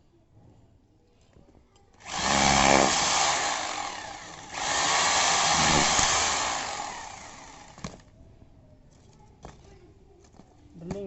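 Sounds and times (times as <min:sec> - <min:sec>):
rotary hammer drill running: 0:02.0 - 0:08.0.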